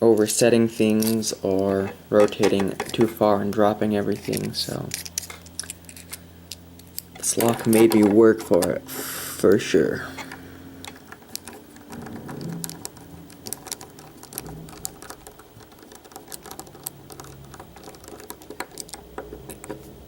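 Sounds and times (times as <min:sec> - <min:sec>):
lock and metal tools clicking: 0:10.2 - 0:19.8.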